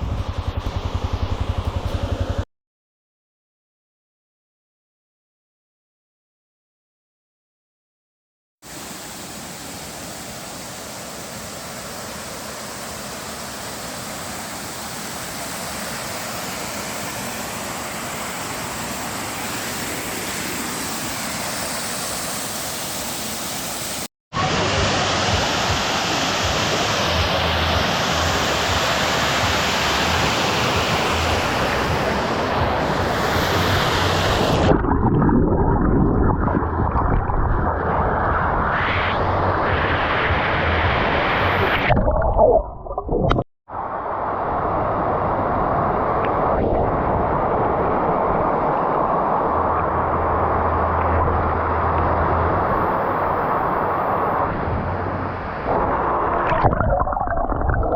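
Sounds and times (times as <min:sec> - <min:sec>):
waterfall rushing: 0:08.7 - 0:34.7.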